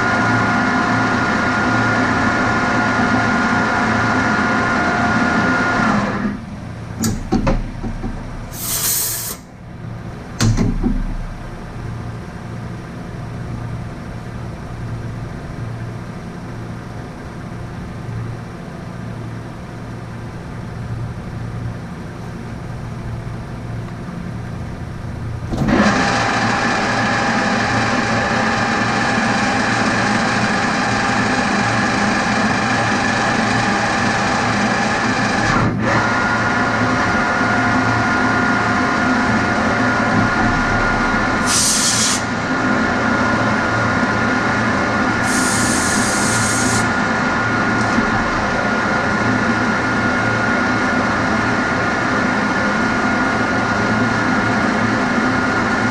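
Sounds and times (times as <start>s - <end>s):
short hisses: 8.5s - 9.5s, 41.5s - 42.3s.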